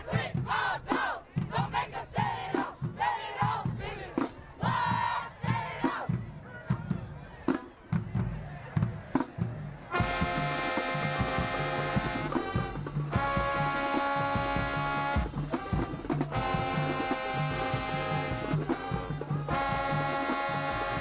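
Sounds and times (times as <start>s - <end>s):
steady low drum beat: 0.0s - 7.2s, 7.9s - 21.0s
marching band playing: 0.0s - 21.0s
brass sustained chords: 9.9s - 21.0s.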